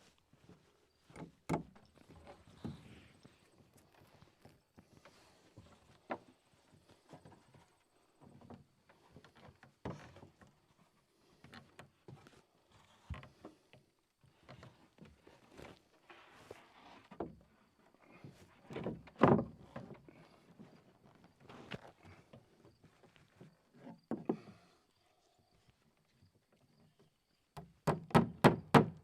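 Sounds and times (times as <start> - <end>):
hammer knocking on wood: 27.6 - 29.0.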